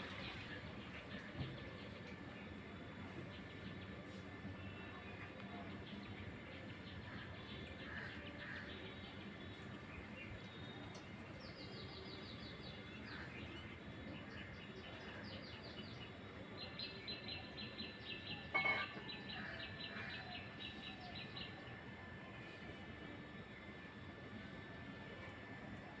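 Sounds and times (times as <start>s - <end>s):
birds chirping: 3.3s - 21.7s.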